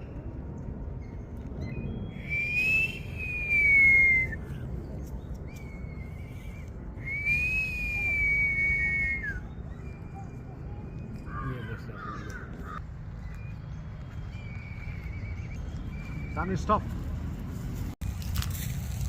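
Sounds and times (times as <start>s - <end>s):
person whistling: 2.1s - 4.4s, 6.2s - 9.5s.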